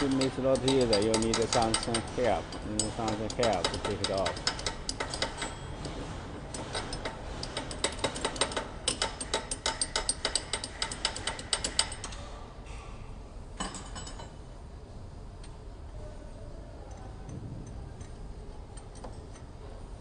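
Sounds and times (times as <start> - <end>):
ratchet wrench clicking: 0.0 - 5.6, 6.5 - 12.2.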